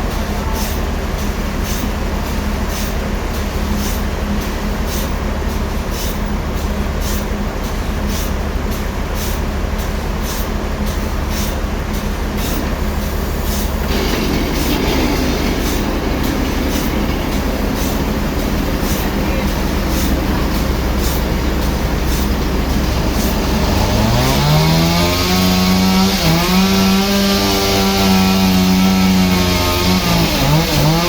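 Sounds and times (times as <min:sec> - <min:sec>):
sawmill saw cutting log: 0:12.3 - 0:31.0.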